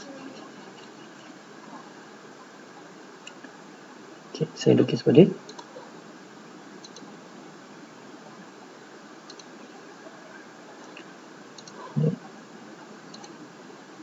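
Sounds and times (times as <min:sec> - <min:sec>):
microphone hiss: 0:00.0 - 0:14.0
computer mouse clicks: 0:03.2 - 0:03.6, 0:05.5 - 0:05.7, 0:06.8 - 0:07.1, 0:09.3 - 0:09.6, 0:10.8 - 0:11.8, 0:13.1 - 0:13.4.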